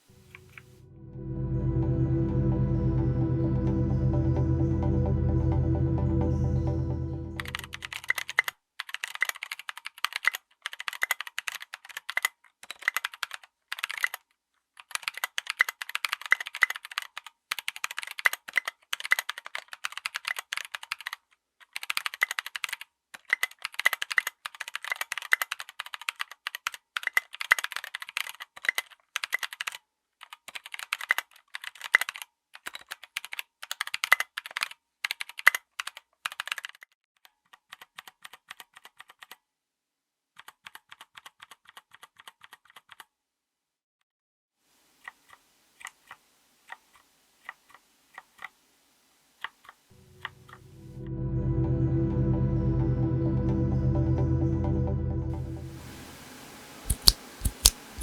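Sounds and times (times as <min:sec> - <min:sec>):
fast mechanical keyboard typing: 0:07.4 - 0:39.4, 0:40.4 - 0:43.1, 0:56.9 - 0:58.0.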